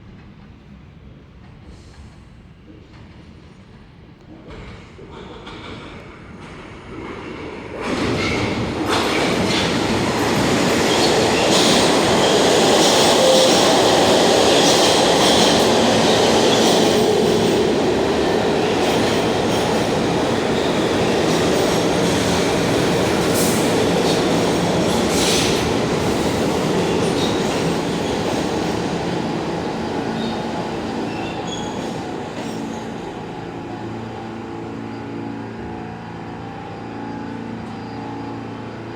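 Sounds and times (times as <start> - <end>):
subway train rumble and rattle: 0.0 - 38.9
wheel squeal: 31.1 - 32.8.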